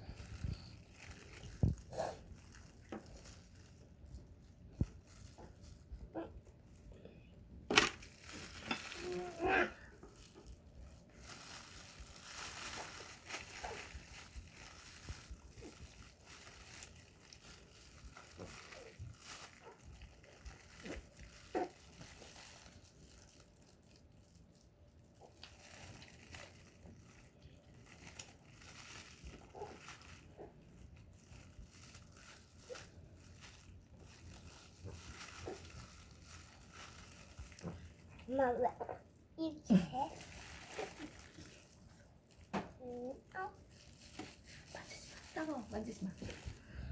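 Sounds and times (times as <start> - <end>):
rustling: 0.0 - 7.0, 7.6 - 46.9
child chewing and gnawing: 0.0 - 39.2, 39.9 - 45.1
child vocal sounds: 8.9 - 9.8.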